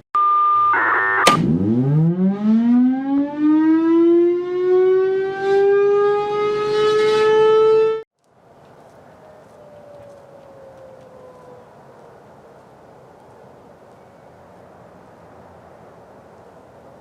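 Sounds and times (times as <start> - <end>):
warning siren winding up: 0.6 - 8.0.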